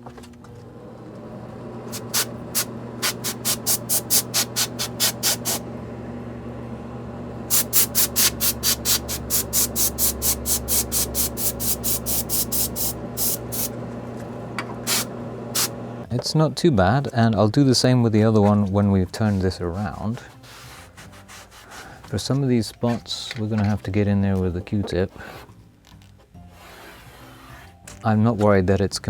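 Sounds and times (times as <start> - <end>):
steady low hum: 0.1 - 16.2
compressed air puffs: 1.9 - 5.6, 7.5 - 13.8, 14.8 - 15.8, 20.2 - 22.2, 25.1 - 25.6, 26.5 - 27.8.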